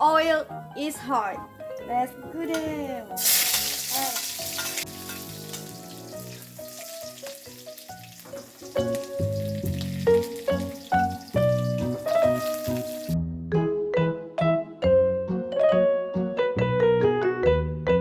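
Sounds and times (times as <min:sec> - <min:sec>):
background music: 0:00.0 - 0:18.0
food sizzling in frying pan: 0:03.1 - 0:13.2.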